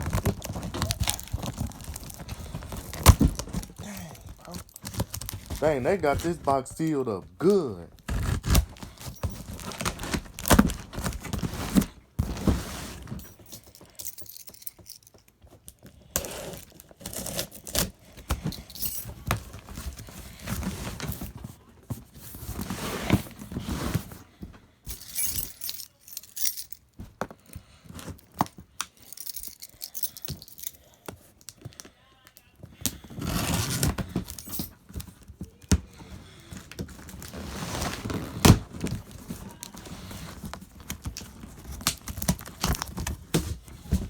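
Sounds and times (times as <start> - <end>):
cardboard rustling and tearing: 0.0 - 6.5, 7.9 - 13.2, 16.2 - 24.2, 32.9 - 44.0.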